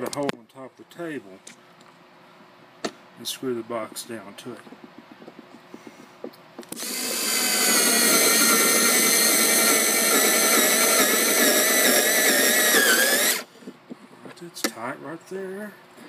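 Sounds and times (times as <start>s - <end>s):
electric screwdriver driving a screw: 6.7s - 13.5s.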